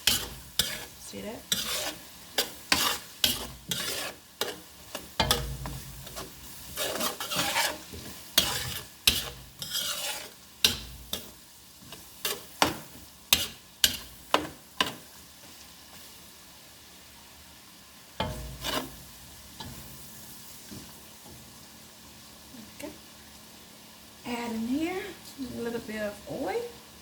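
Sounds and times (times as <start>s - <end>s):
utensil scraping frying pan: 0.0s - 16.1s, 18.2s - 21.4s
food sizzling: 0.0s - 27.0s.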